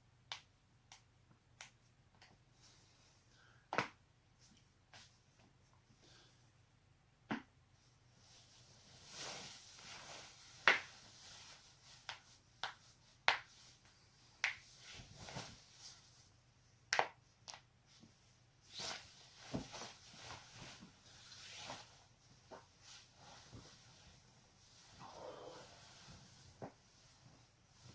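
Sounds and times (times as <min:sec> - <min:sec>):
soft rustling: 0:07.8 - 0:16.4, 0:17.8 - 0:27.9.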